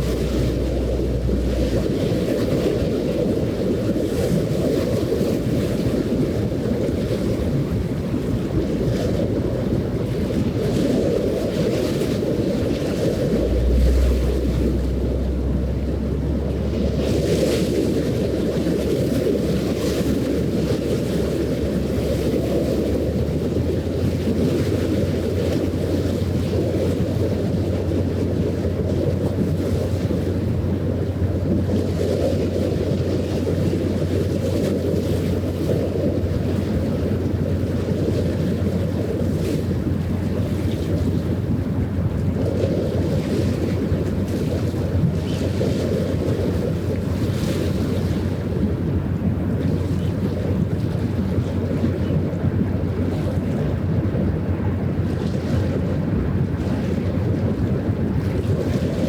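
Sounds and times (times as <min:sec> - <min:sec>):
ship engine drone: 0:00.0 - 0:55.1
wind rumbling on microphone: 0:00.0 - 0:59.0.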